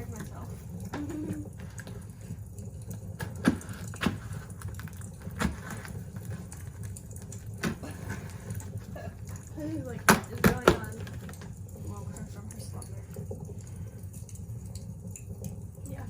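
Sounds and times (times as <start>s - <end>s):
low background hum: 0.0s - 16.0s
cardboard box being cut: 3.2s - 6.8s.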